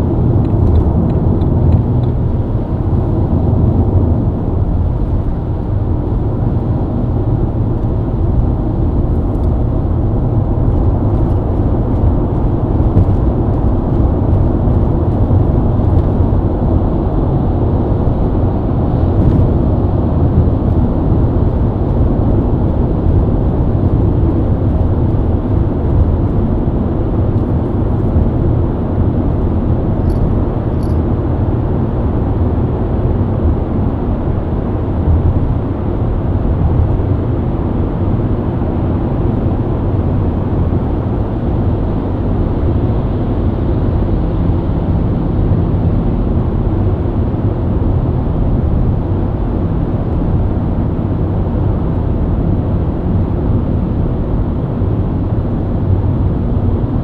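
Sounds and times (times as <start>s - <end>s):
tyre and road noise: 0.0s - 50.6s
car engine cruising: 0.0s - 57.0s.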